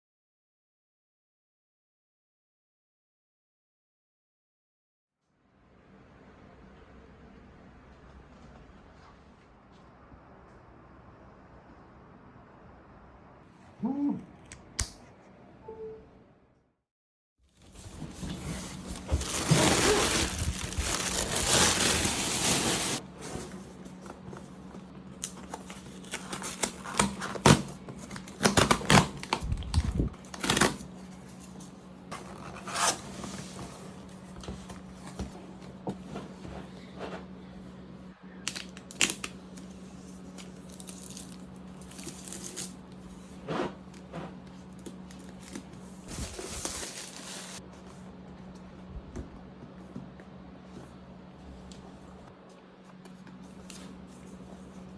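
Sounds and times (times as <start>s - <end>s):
cardboard packaging tearing: 17.7s - 23.4s, 25.2s - 31.1s, 40.4s - 42.9s, 44.8s - 47.6s.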